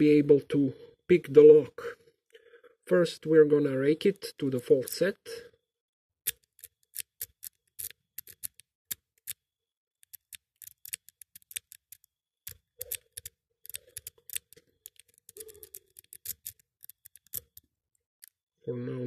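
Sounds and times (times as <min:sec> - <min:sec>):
lock pick raking padlock: 0:06.2 - 0:09.4, 0:10.0 - 0:18.4.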